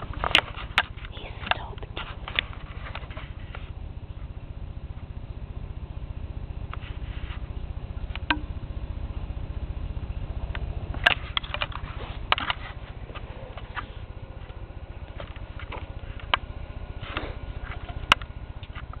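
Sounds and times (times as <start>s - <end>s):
lawnmower engine running: 0.0s - 19.0s.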